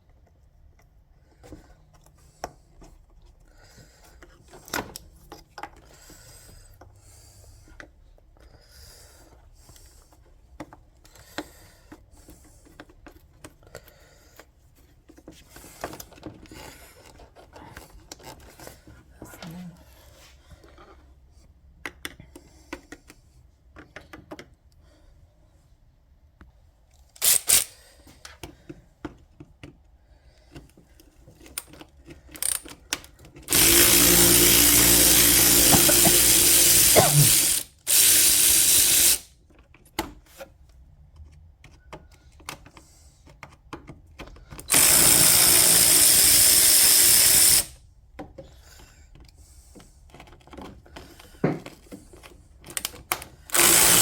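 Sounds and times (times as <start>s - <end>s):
tools clicking and clattering: 27.1s - 27.7s, 31.3s - 39.2s
power drill running: 27.2s - 27.7s, 32.4s - 32.6s, 33.5s - 39.3s, 44.7s - 47.7s, 53.5s - 54.0s.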